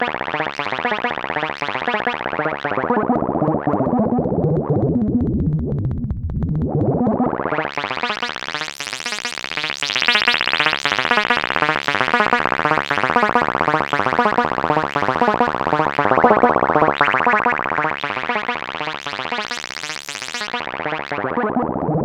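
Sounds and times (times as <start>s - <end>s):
analog synthesizer filter sweep: 0.0s - 22.0s.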